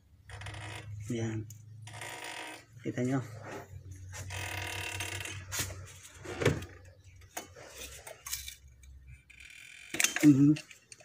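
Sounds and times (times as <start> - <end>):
metal tools clinking and knocking: 7.3 - 9.0, 9.9 - 11.0.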